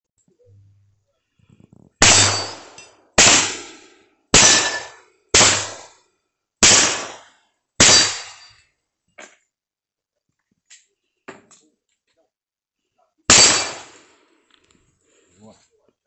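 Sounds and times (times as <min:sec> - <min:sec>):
revolver shots ringing: 0:02.0 - 0:05.8.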